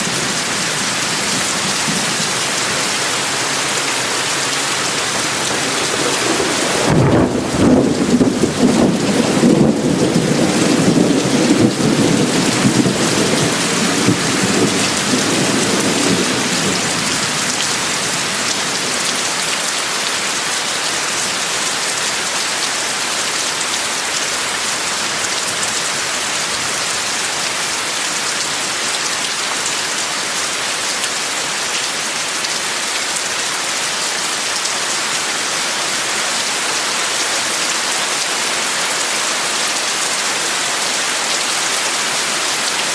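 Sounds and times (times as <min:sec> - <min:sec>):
steady rain falling: 0:00.0 - 0:42.9
low rumble of thunder: 0:05.5 - 0:18.7.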